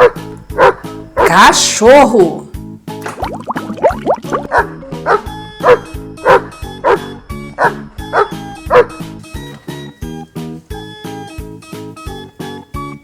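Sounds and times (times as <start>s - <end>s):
dog barking: 0.0s - 1.4s, 4.4s - 9.1s
background music with beat: 8.1s - 13.0s.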